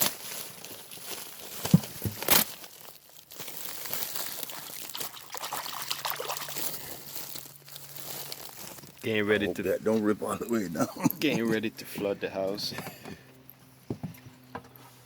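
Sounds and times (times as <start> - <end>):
duct material crinkling clicks: 0.0 - 5.0
water pouring and trickling: 3.9 - 7.4.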